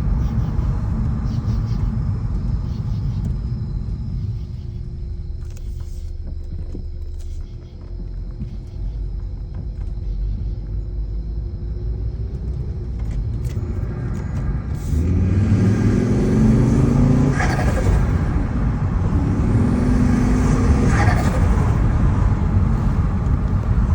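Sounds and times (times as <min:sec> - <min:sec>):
turbocharged car engine revving: 0:11.1 - 0:23.9.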